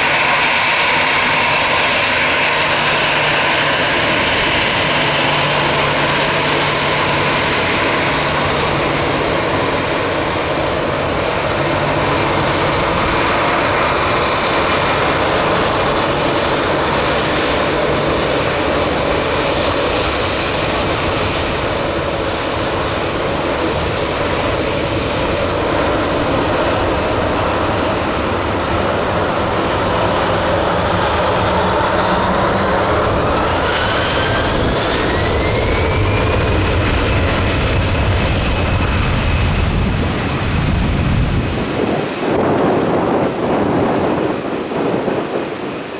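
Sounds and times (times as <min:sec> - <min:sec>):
jet engines running: 0:00.0 - 0:45.9.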